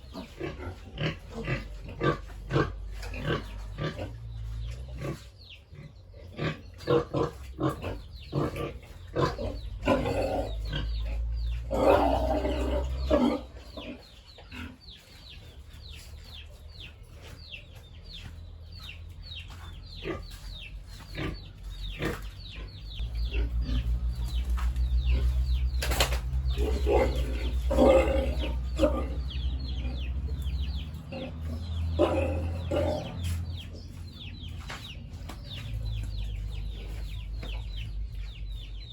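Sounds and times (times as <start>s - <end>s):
pigs grunting and squealing: 0.0s - 17.6s, 19.9s - 34.3s
chickens clucking: 0.0s - 38.9s
low rumble: 18.4s - 38.9s.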